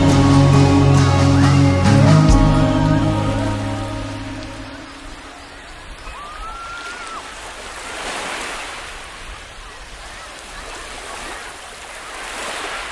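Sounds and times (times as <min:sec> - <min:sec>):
sea waves washing onto beach: 0:03.1 - 0:12.9.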